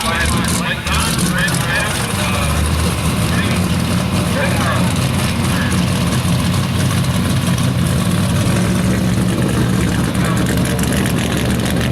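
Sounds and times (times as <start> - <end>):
truck engine running: 0.0 - 11.9.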